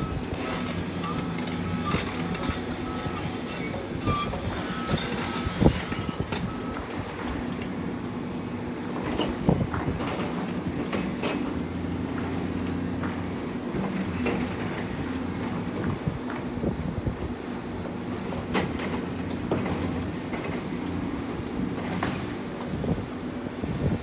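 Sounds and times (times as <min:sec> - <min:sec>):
metal clanks and squeals: 0:00.0 - 0:06.7
heavy construction machinery running: 0:00.0 - 0:24.0.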